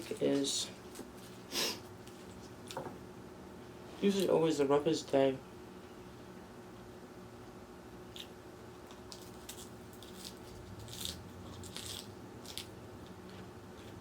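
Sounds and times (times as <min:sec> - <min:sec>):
chewing crisp vegetables: 0:08.1 - 0:14.0.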